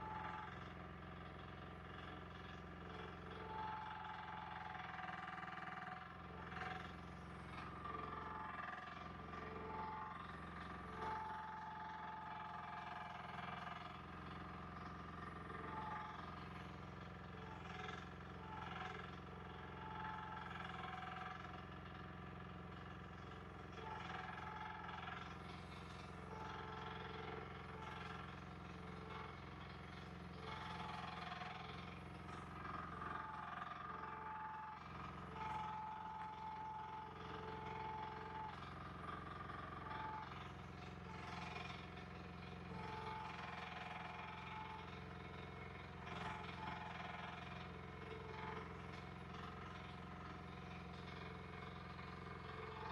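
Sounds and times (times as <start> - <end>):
earthmoving machine engine running: 0.0 - 52.9.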